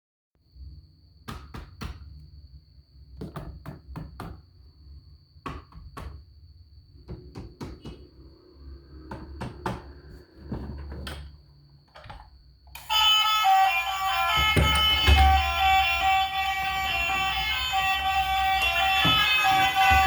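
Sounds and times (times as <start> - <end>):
plastic toys clicking and knocking: 14.4 - 15.5.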